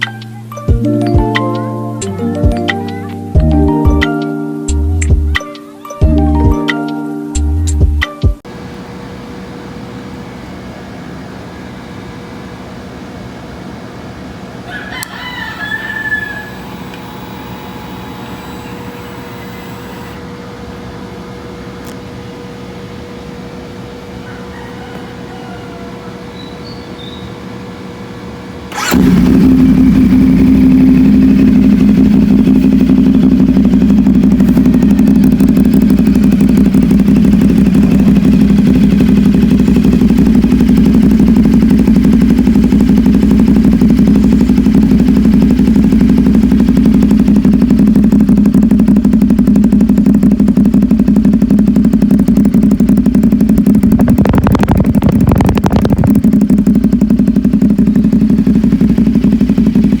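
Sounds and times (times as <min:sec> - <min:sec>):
motorcycle engine idling: 0:14.7 - 0:20.2, 0:28.7 - 1:00.0.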